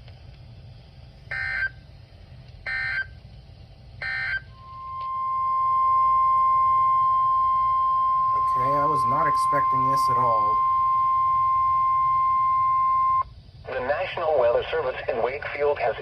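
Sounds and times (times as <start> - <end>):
weather radio alarm tone: 1.3 - 1.7, 2.7 - 3.1, 4.0 - 13.2
data tone bursts: 4.0 - 13.3.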